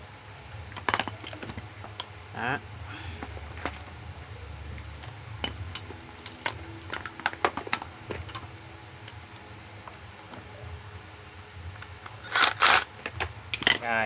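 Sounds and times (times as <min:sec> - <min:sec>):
small metal parts clicking: 0:05.4 - 0:07.7, 0:11.8 - 0:12.9.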